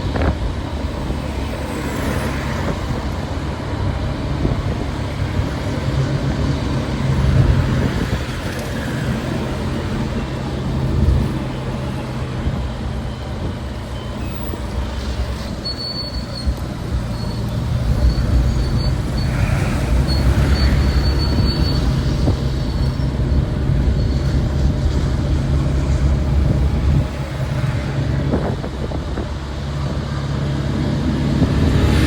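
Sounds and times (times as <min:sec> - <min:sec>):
city street traffic: 0:00.0 - 0:32.0
thin high squeal: 0:15.4 - 0:16.5.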